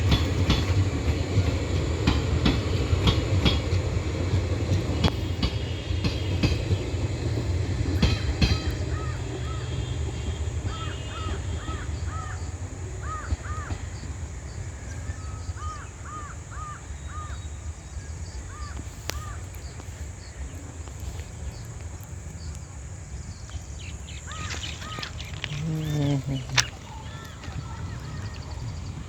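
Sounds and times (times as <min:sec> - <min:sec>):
crows cawing: 0:08.9 - 0:09.9, 0:10.7 - 0:13.8, 0:15.6 - 0:17.4, 0:18.5 - 0:19.5, 0:24.2 - 0:28.6.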